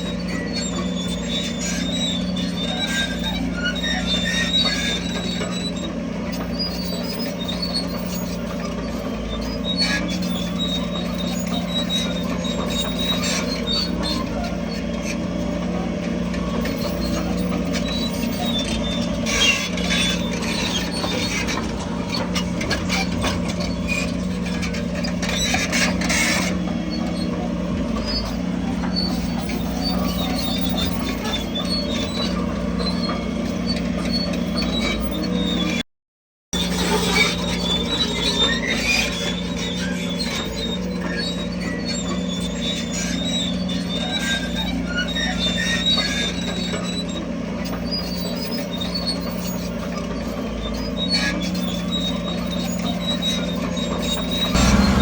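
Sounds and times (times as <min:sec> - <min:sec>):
diesel construction machinery running: 0:00.0 - 0:35.8, 0:36.6 - 0:55.0
metallic squeaks and clicks: 0:00.0 - 0:35.8, 0:36.6 - 0:55.0
machinery rattles: 0:54.3 - 0:55.0.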